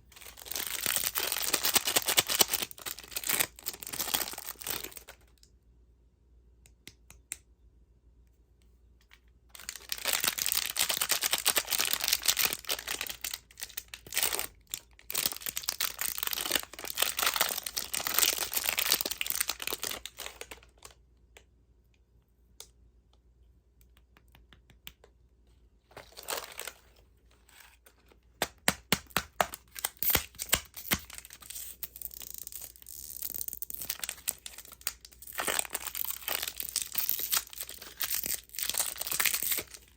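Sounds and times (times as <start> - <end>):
candy wrapper tearing and crinkling: 0.2 - 5.2, 9.6 - 20.8, 28.9 - 39.9.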